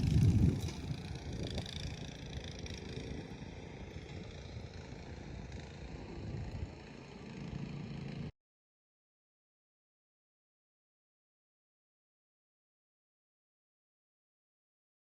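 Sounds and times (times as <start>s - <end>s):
rototiller engine drone: 0.0s - 8.3s.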